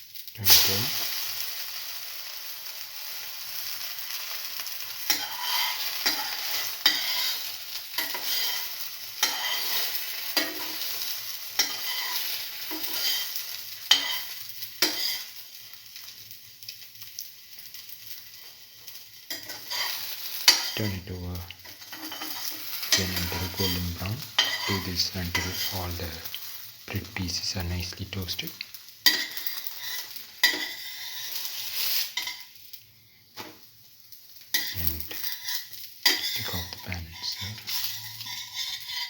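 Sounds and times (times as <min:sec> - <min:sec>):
bread sizzling in oil: 0:00.0 - 0:39.0
utensil scraping and tapping pan: 0:08.0 - 0:08.6, 0:21.6 - 0:26.4, 0:29.1 - 0:31.5, 0:34.6 - 0:39.0.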